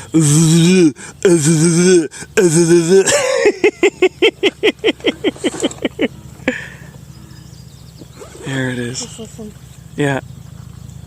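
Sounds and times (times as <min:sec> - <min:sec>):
man making rapid syllables: 0:00.0 - 0:03.2.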